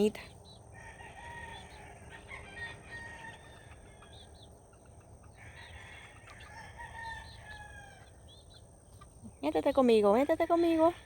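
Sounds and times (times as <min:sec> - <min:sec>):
young roosters crowing: 0:00.6 - 0:08.8.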